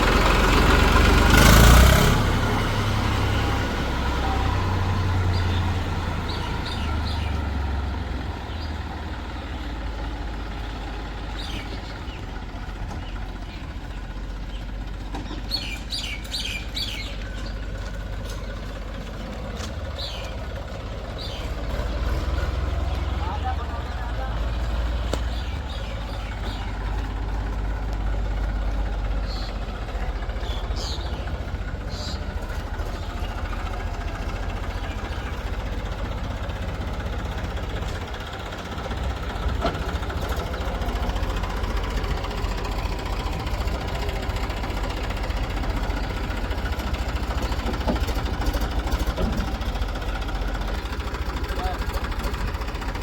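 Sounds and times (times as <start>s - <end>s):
diesel engine chugging: 0.0s - 53.0s.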